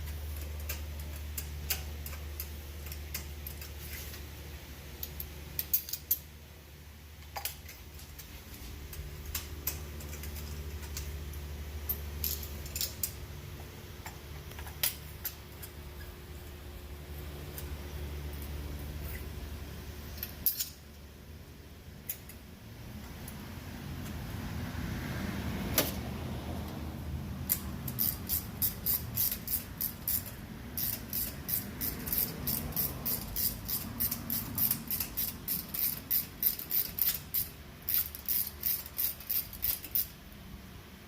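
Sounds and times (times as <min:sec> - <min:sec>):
ratchet wrench clicking: 0:00.4 - 0:03.8, 0:05.0 - 0:06.3, 0:27.5 - 0:40.2.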